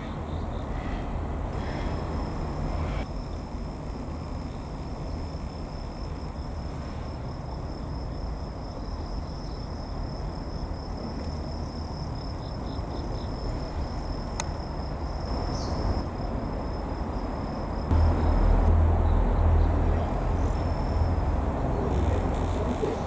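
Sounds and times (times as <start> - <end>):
constant low rumble: 0.0 - 23.0
insects trilling: 0.3 - 23.0.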